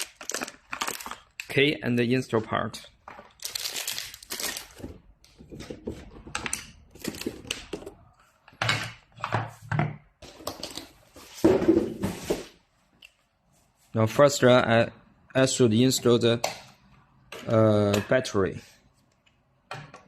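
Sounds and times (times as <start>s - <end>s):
plastic packaging rustling: 0.0s - 1.6s, 3.0s - 5.1s, 5.7s - 8.0s.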